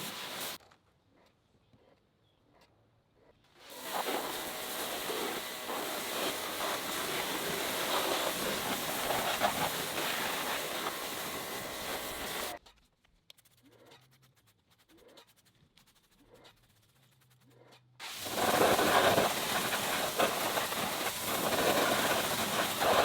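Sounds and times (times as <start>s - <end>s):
loud steady hiss: 0.0s - 0.6s, 3.7s - 12.6s, 18.0s - 23.0s.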